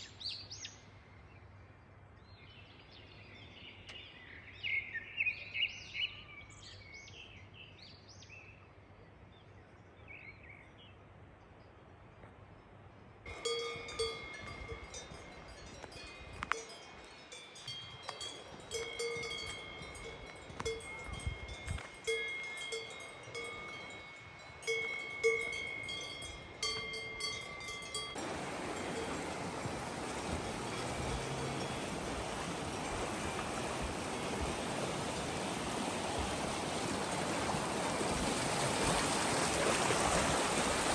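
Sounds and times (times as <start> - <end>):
cowbells clanking: 13.3 - 36.3.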